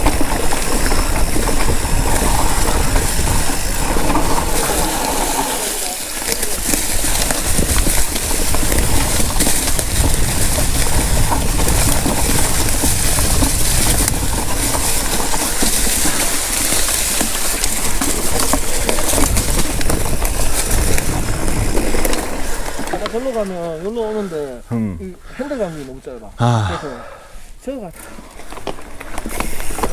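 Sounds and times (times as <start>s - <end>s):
wind rush on microphone: 0.0s - 5.4s, 6.6s - 22.9s
bike rattling over rough ground: 0.0s - 29.9s
tyres crunching on dirt: 0.0s - 29.9s.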